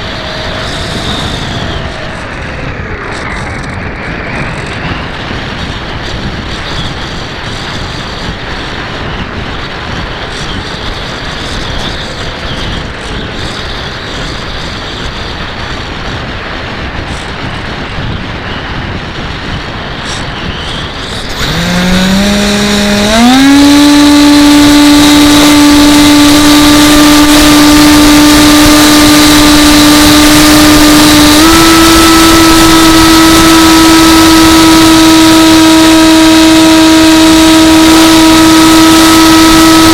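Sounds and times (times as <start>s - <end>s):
electric motor whine: 0.0s - 7.1s, 20.1s - 39.9s
wind rushing over microphone: 0.0s - 39.9s.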